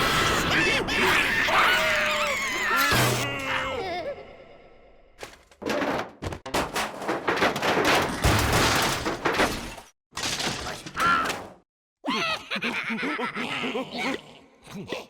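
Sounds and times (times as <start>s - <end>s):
cartoon crashes and bangs: 2.8s - 3.5s, 5.8s - 11.5s.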